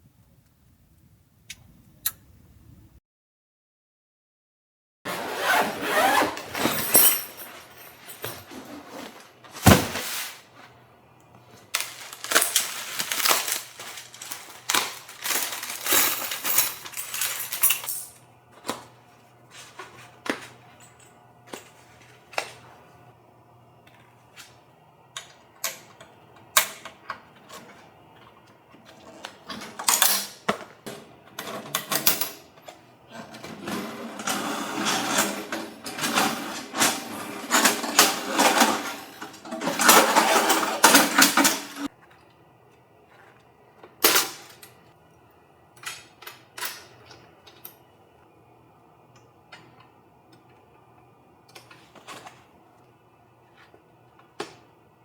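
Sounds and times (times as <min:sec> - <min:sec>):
hard objects clinking and knocking: 0:11.8 - 0:18.2.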